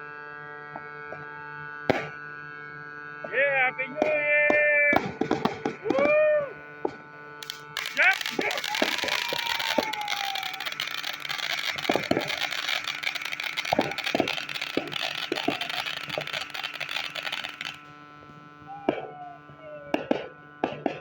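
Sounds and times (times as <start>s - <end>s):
firework hissing with sharp pops: 4.5s - 6.1s, 6.8s - 19.2s, 19.9s - 21.0s.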